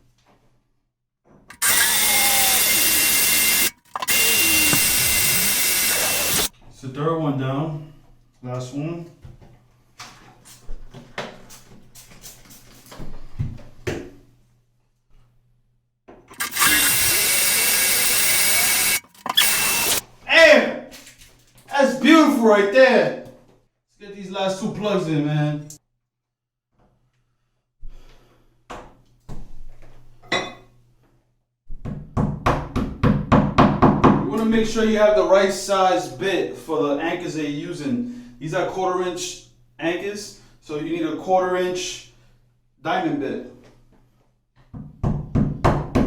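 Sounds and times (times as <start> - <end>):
power drill boring through tile: 1.5 - 6.5, 16.3 - 20.0.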